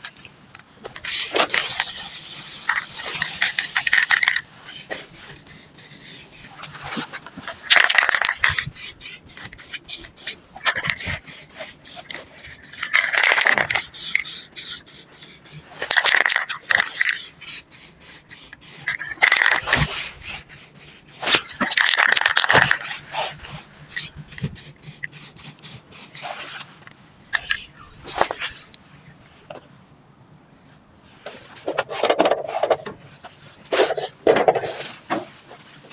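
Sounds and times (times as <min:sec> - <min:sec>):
can clicking and rattling: 0:02.7 - 0:04.4, 0:07.7 - 0:14.8, 0:21.6 - 0:23.0
spray paint can hissing: 0:07.8 - 0:19.5.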